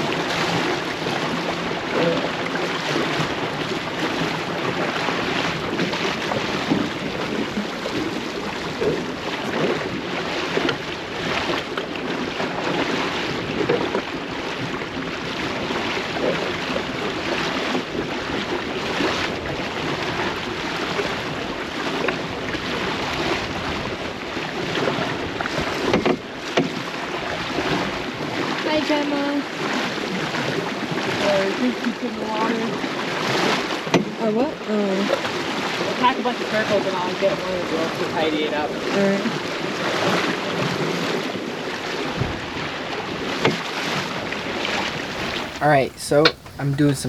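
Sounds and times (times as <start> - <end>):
water splashing against boat hull: 0.0 - 34.4, 35.0 - 47.0
wind buffeting microphone: 22.3 - 26.0, 44.5 - 47.0.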